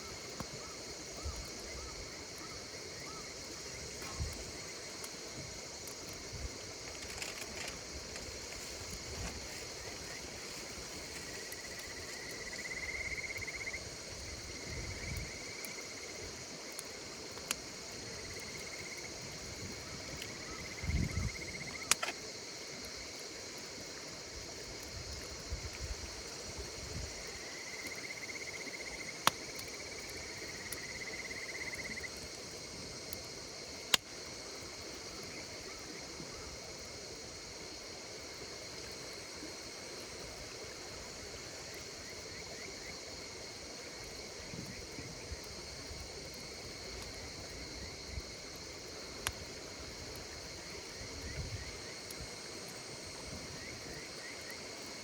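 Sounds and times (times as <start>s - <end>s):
insects singing: 0.0s - 22.7s
campfire crackling and popping: 0.0s - 55.0s.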